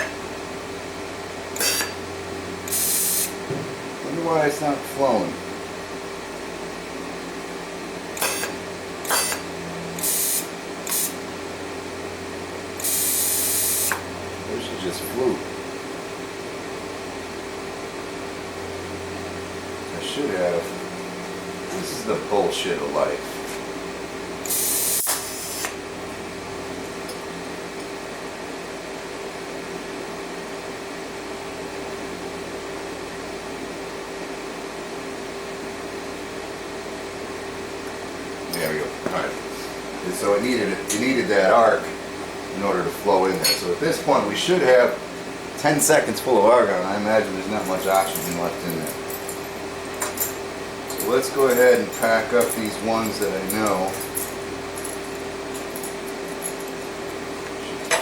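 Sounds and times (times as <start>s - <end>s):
welding machine humming: 0.0s - 16.3s, 18.3s - 27.9s
machine hum: 0.0s - 32.8s, 34.5s - 58.0s
gas hissing from torch: 1.6s - 2.0s, 2.6s - 3.4s, 8.2s - 11.2s, 12.7s - 14.0s, 24.4s - 25.8s
welding arc burst: 1.6s - 2.0s, 2.6s - 3.4s, 10.0s - 11.2s, 12.8s - 14.0s, 24.5s - 25.7s.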